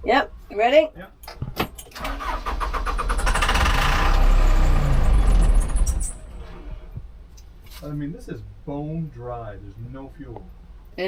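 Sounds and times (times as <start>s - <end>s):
diesel engine cranking by starter: 1.2s - 7.0s.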